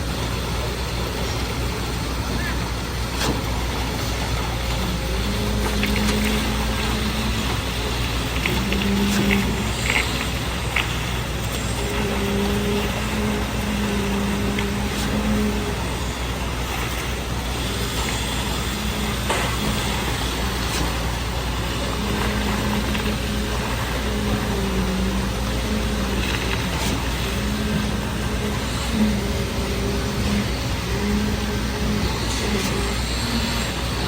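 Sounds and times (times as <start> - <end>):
heavy machinery engine running: 0.0 - 34.0
intermittent hum: 0.0 - 34.0.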